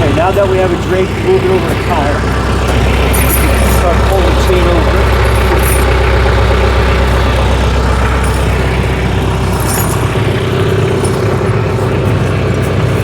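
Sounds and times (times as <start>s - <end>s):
tractor engine idling: 0.0s - 13.0s
metallic chain rattle: 3.0s - 13.0s.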